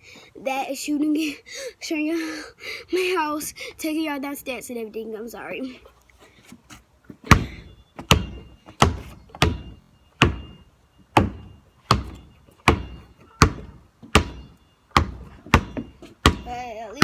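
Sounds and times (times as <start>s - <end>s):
basketball dribbling: 7.2s - 10.6s, 11.2s - 17.0s.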